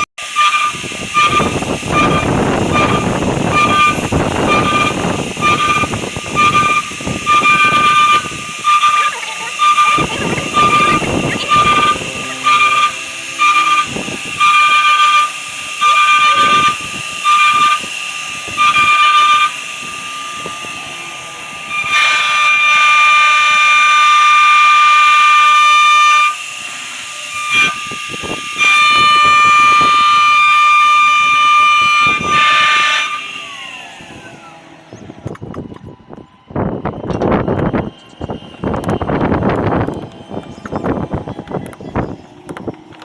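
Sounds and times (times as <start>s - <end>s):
high horn blasts: 0.0s - 34.4s.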